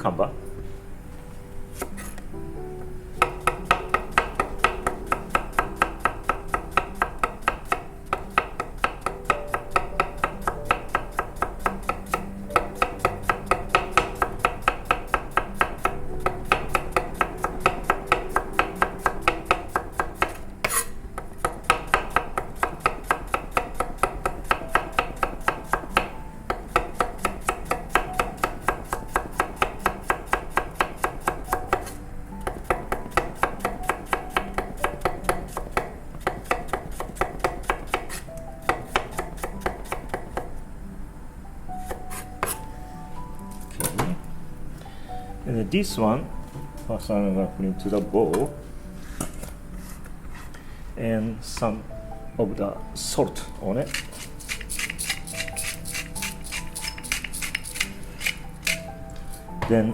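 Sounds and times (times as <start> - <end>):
knife slicing on cutting board: 20.6 - 21.0.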